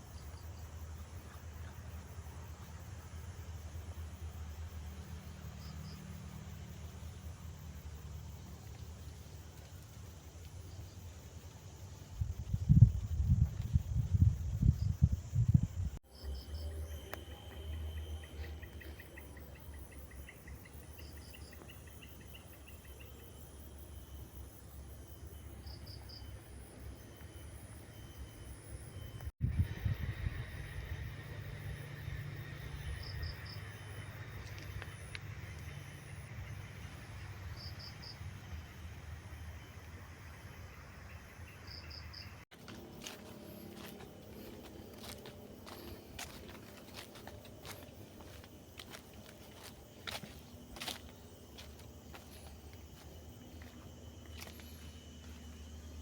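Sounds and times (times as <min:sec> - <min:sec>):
steady high insect buzz: 0:00.0 - 0:56.0
rustling and crackling undergrowth: 0:07.6 - 0:14.4, 0:42.5 - 0:56.0.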